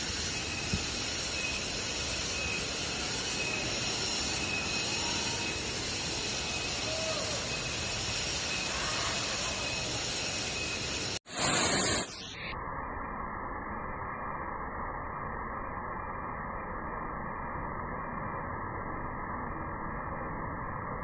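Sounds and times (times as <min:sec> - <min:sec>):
burst of hiss: 0:00.0 - 0:12.4.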